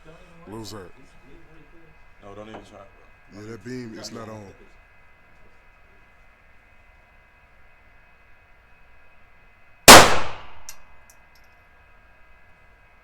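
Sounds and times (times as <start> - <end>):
gunshot: 9.9 - 10.7.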